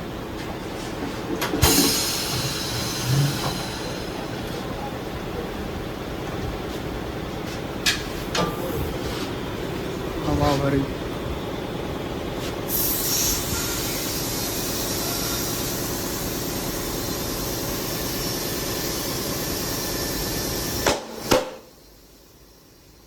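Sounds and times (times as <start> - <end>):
compressed air hissing: 12.7 - 20.9.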